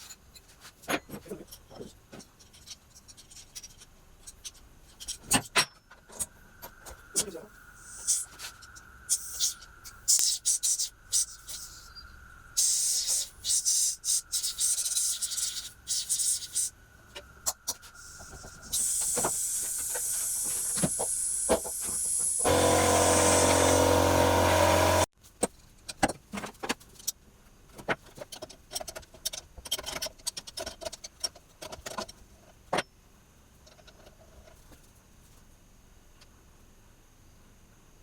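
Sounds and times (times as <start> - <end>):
compressed air hissing: 18.0 - 25.1
air compressor motor humming: 19.0 - 25.1.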